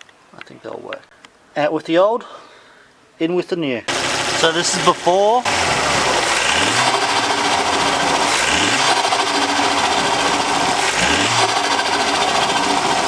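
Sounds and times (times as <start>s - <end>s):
car engine revving: 3.9s - 13.0s
turbo flutter: 3.9s - 13.0s.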